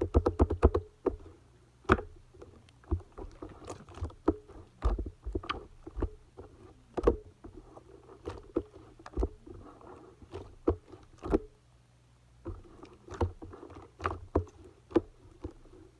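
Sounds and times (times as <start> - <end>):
soft squishing: 1.0 - 11.5, 12.4 - 15.9
slime squelching with wet pops: 1.9 - 11.5.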